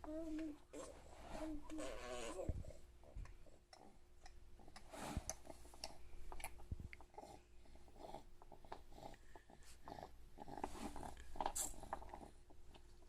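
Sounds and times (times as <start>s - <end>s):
baby soft vocal sounds: 0.0s - 4.0s
baby mouth clicks and smacks: 3.2s - 7.2s.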